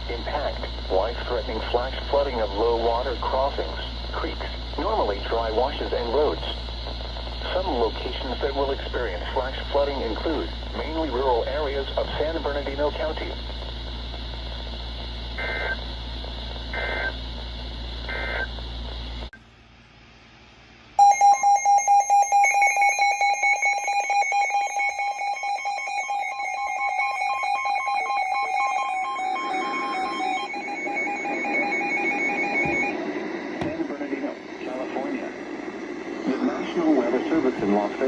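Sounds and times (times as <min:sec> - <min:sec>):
steady hum: 0:00.0 - 0:38.0
alert data bursts: 0:21.0 - 0:32.9
pulsing two-tone attention signal: 0:21.0 - 0:33.0.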